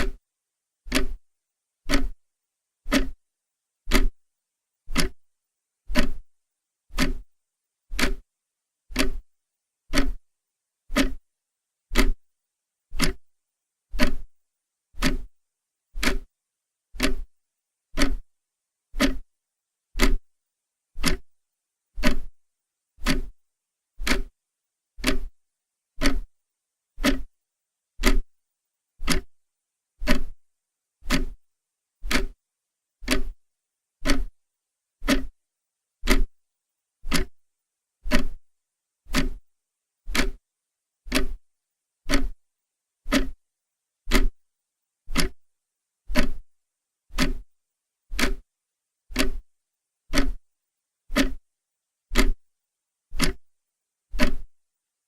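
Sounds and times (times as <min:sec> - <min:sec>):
clock ticking: 0:00.0 - 0:00.2, 0:00.9 - 0:01.2, 0:01.8 - 0:02.2, 0:02.8 - 0:03.2, 0:03.8 - 0:04.2, 0:04.8 - 0:05.3, 0:05.9 - 0:06.3, 0:06.9 - 0:07.3, 0:07.9 - 0:08.3, 0:08.9 - 0:09.3, 0:09.9 - 0:10.3, 0:10.9 - 0:11.2, 0:11.9 - 0:12.2, 0:12.9 - 0:13.3, 0:13.9 - 0:14.3, 0:14.9 - 0:15.3, 0:16.0 - 0:16.3, 0:17.0 - 0:17.3, 0:17.9 - 0:18.3, 0:18.9 - 0:19.3, 0:20.0 - 0:20.3, 0:21.0 - 0:21.4, 0:22.0 - 0:22.4, 0:23.0 - 0:23.4, 0:24.0 - 0:24.4, 0:25.0 - 0:25.4, 0:26.0 - 0:26.4, 0:27.0 - 0:27.4, 0:28.0 - 0:28.3, 0:29.0 - 0:29.4, 0:30.0 - 0:30.4, 0:31.0 - 0:31.4, 0:32.0 - 0:32.4, 0:33.0 - 0:33.4, 0:34.0 - 0:34.4, 0:35.0 - 0:35.4, 0:36.0 - 0:36.4, 0:37.0 - 0:37.4, 0:38.1 - 0:38.5, 0:39.1 - 0:39.5, 0:40.1 - 0:40.4, 0:41.1 - 0:42.4, 0:43.1 - 0:43.4, 0:44.1 - 0:44.4, 0:45.1 - 0:45.5, 0:46.1 - 0:46.5, 0:47.1 - 0:48.5, 0:49.1 - 0:49.5, 0:50.1 - 0:50.5, 0:51.1 - 0:51.5, 0:52.1 - 0:52.5, 0:53.1 - 0:53.5, 0:54.1 - 0:54.6.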